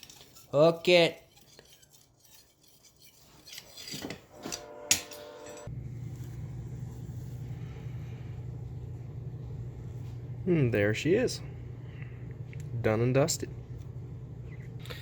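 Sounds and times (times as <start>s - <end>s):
metal scraping: 0.0s - 5.7s
steady low hum: 4.5s - 15.0s.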